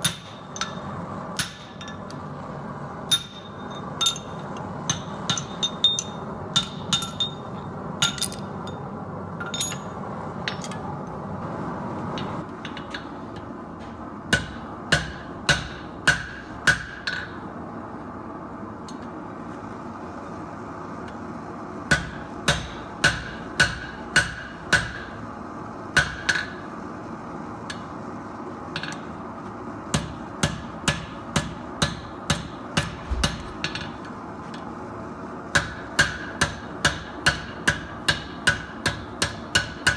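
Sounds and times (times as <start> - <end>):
hammer striking steel on anvil: 0.0 - 2.2, 3.0 - 10.8, 14.3 - 17.4, 21.9 - 25.2, 26.0 - 26.6, 29.9 - 34.0, 35.5 - 39.9.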